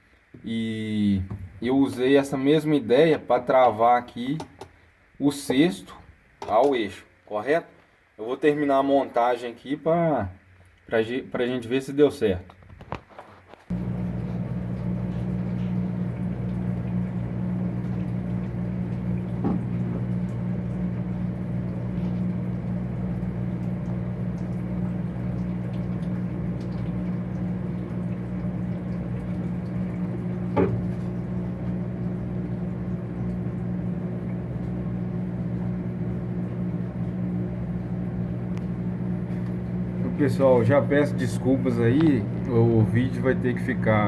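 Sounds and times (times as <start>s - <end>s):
washing machine motor humming: 13.7s - 44.0s.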